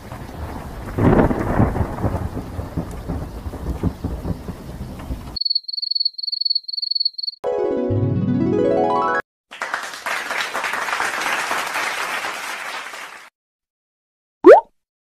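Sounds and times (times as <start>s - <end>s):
loud thunderclap rumbling: 0.0s - 5.4s
rain: 0.0s - 5.4s.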